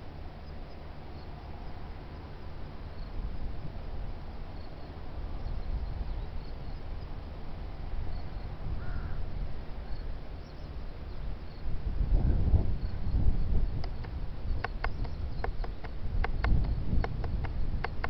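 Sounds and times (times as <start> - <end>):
strong wind buffeting microphone: 11.3 - 18.0.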